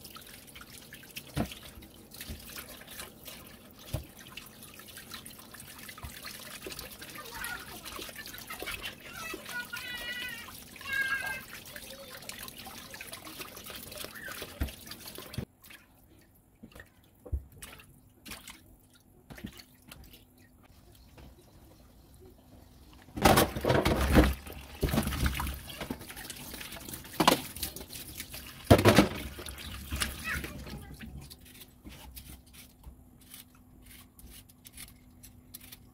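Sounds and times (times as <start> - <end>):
tap water running: 0.0 - 15.5, 22.8 - 33.4
water splashing on food: 0.0 - 16.0, 16.6 - 20.4, 23.2 - 31.5.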